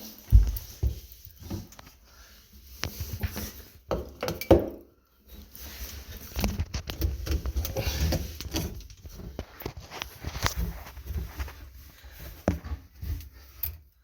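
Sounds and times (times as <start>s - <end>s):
objects knocking and clattering: 3.0s - 4.9s.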